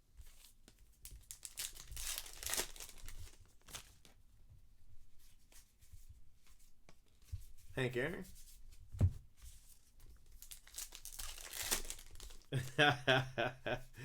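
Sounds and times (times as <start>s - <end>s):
card pack wrapper tearing: 1.3s - 3.9s, 10.4s - 12.5s.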